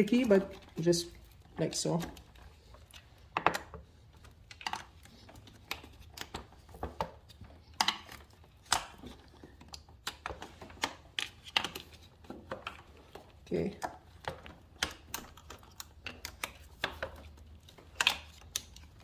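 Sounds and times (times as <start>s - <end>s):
plastic clips snapping: 7.8s - 11.8s.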